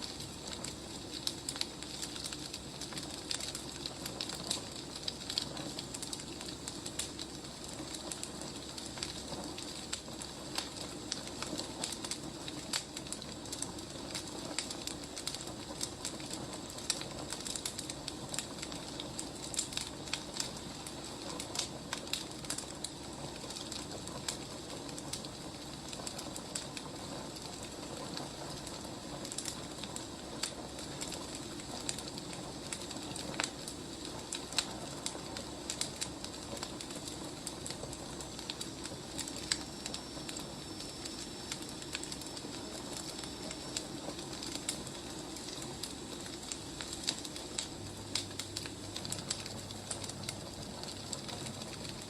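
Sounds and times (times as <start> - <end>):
wood fire crackling and popping: 0.0 - 52.0.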